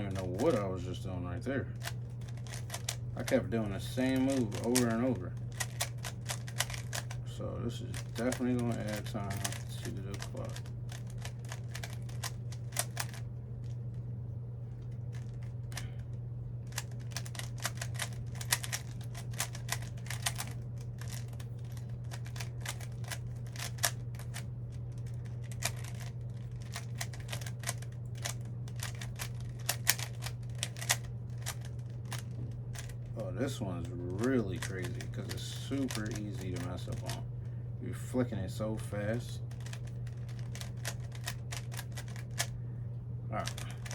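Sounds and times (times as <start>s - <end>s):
low hum: 0.0s - 43.9s
rubik's cube clicking: 1.8s - 3.0s, 4.3s - 7.2s, 7.9s - 13.2s, 16.7s - 24.4s, 25.0s - 33.0s, 35.9s - 37.1s, 39.6s - 42.5s, 43.5s - 43.9s.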